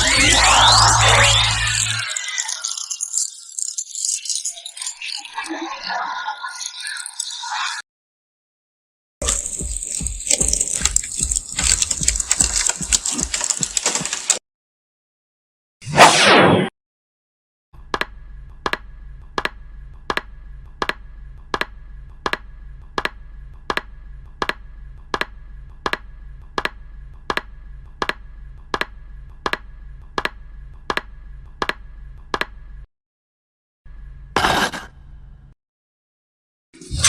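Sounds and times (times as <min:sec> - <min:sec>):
low steady hum: 0:17.8 - 0:32.8.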